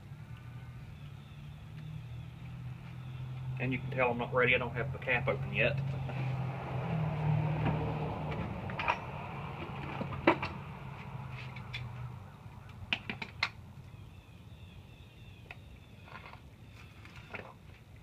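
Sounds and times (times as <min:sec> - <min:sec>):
clicks and knocks of pipe parts: 0:08.3 - 0:10.6.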